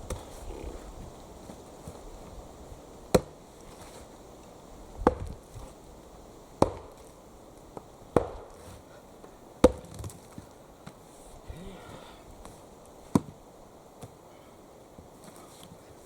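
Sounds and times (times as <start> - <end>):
axe chopping wood: 3.1 - 3.4, 5.0 - 5.4, 6.6 - 7.0, 8.1 - 8.7, 9.6 - 10.2, 13.1 - 13.4.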